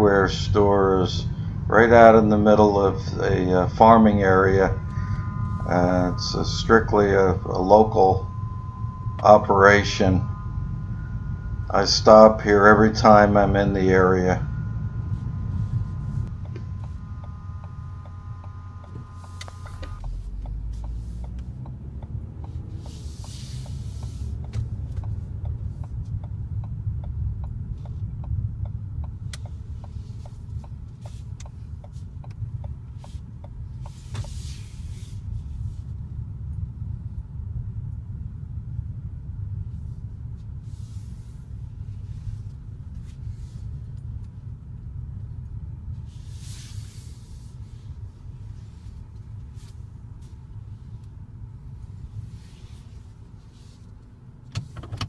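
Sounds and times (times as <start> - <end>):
engine and tyre road noise: 0.0 - 55.0
regular ticks: 0.2 - 34.4.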